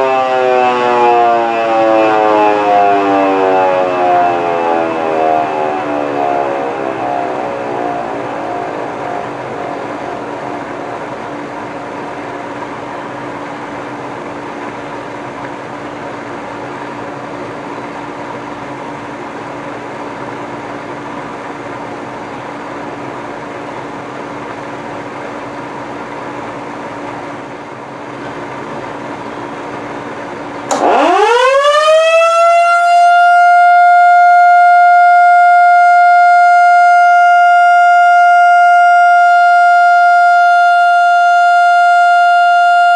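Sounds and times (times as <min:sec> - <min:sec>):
electromechanical siren wailing: 0:00.0 - 0:11.2, 0:30.7 - 0:42.9.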